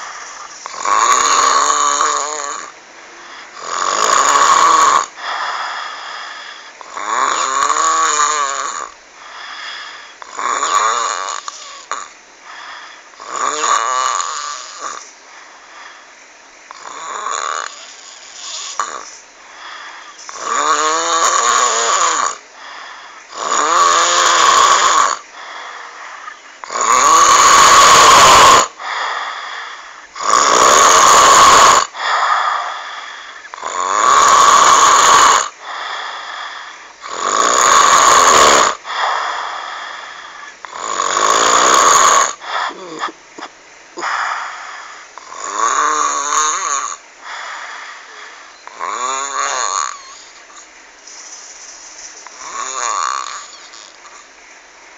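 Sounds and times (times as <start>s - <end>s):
loud snoring: 0.0s - 2.8s, 3.4s - 15.1s, 16.7s - 54.2s.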